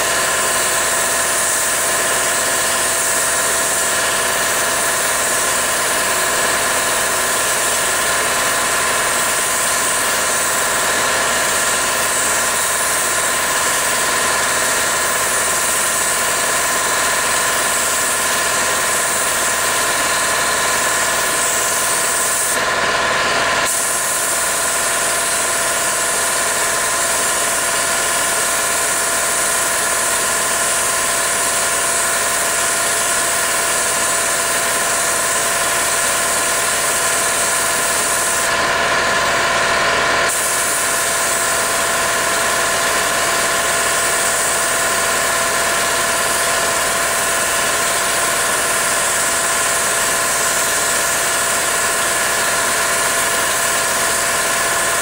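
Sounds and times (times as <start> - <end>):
air compressor humming: 0.0 - 55.0
spray gun hissing: 0.0 - 55.0.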